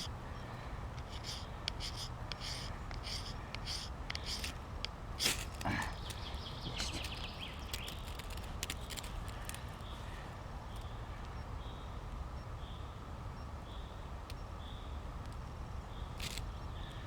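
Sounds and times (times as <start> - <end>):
firesteel scraping: 1.0 - 4.6, 5.2 - 9.6.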